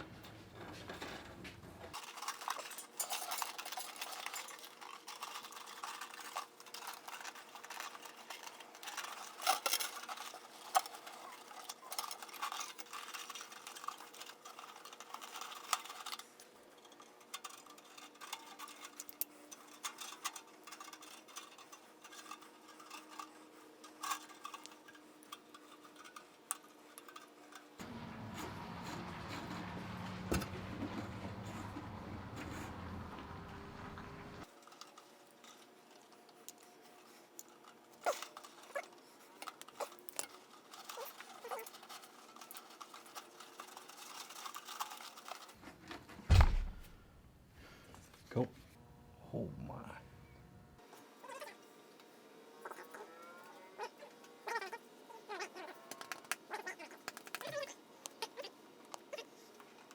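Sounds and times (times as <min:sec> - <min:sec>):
small hard parts clinking: 0:01.9 - 0:45.6.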